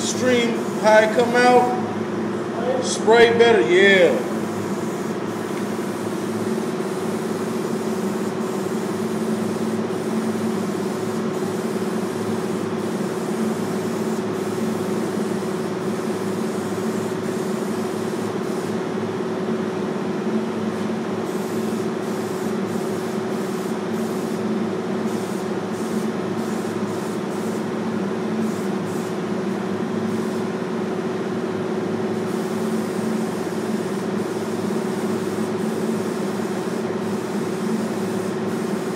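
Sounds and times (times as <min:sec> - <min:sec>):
mechanical hum: 0:00.0 - 0:38.9
spray-paint can hissing: 0:04.2 - 0:18.8, 0:21.2 - 0:27.8, 0:28.4 - 0:29.2, 0:30.1 - 0:30.5, 0:32.2 - 0:38.9.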